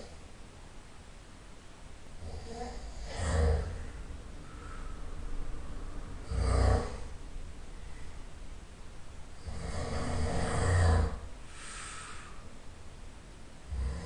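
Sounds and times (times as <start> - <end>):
person snoring: 2.2 - 4.0, 6.2 - 7.1, 9.4 - 12.4, 13.7 - 14.0
airy breath out: 3.7 - 5.3, 11.4 - 12.6.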